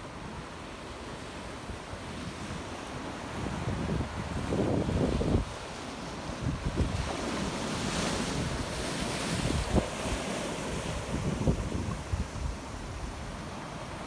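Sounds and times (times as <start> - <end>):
wind buffeting microphone: 3.4 - 13.4.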